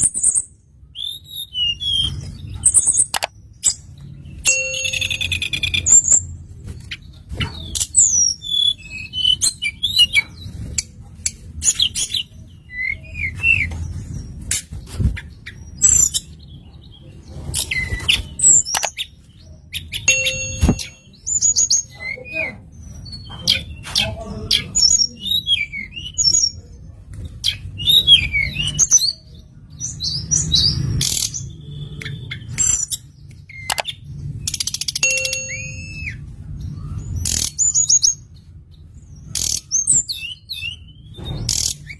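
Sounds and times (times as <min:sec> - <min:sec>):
songbird singing: 0:00.0 - 0:10.6, 0:14.9 - 0:41.9
sharp clicks: 0:33.3 - 0:33.9.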